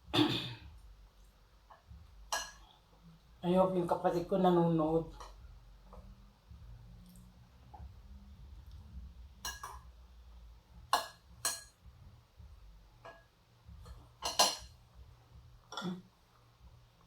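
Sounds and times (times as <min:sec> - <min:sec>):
faint low hum: 0:00.0 - 0:17.0
cutlery clinking against dish: 0:01.7 - 0:02.7, 0:09.4 - 0:09.9, 0:10.9 - 0:11.8, 0:13.9 - 0:14.8, 0:15.7 - 0:16.0.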